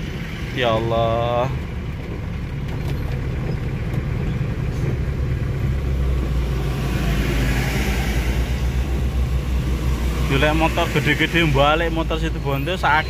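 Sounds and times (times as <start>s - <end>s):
vehicle engine running: 0.0s - 13.0s.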